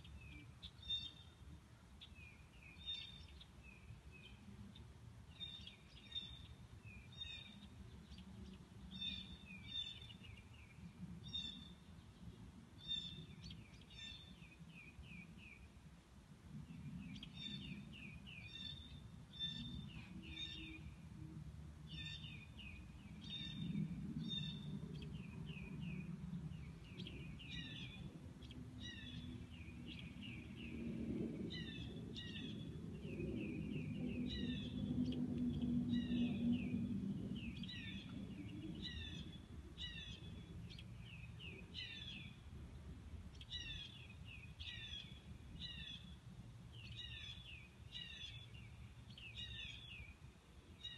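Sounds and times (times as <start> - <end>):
songbirds chirping and trilling: 0.0 - 50.9
low rumble: 22.3 - 46.2.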